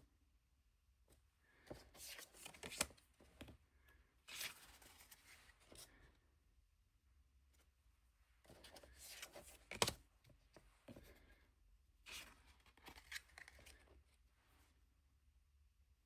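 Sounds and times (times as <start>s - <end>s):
cards rustling and sliding: 1.6s - 3.5s, 4.3s - 5.9s, 8.5s - 11.2s, 12.1s - 14.0s.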